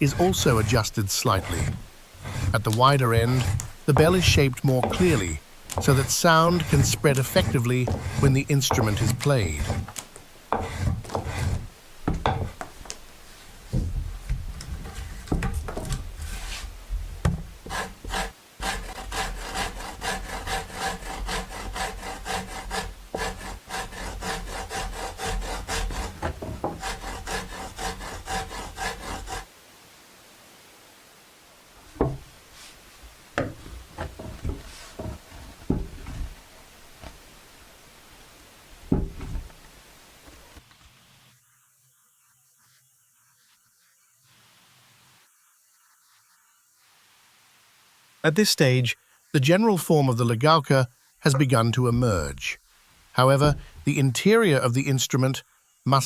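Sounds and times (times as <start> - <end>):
hand tools scraping wood: 0.0 - 29.5, 31.9 - 37.3, 38.8 - 40.6, 53.2 - 53.9
knocks: 7.8 - 12.8, 32.0 - 32.3, 33.4 - 36.3, 38.9 - 39.5.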